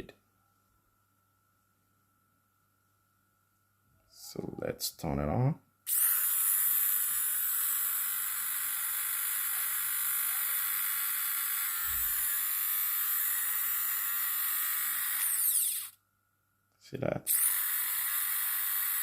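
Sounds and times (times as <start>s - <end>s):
electric shaver buzzing: 5.9s - 16.0s, 17.3s - 19.0s.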